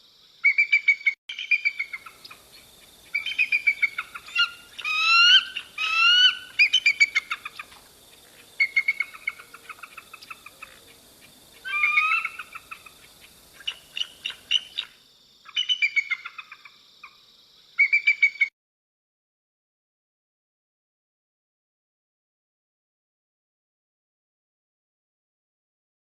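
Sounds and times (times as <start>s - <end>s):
eagle piping calls: 0.4s - 7.8s, 8.6s - 17.2s, 17.8s - 18.5s.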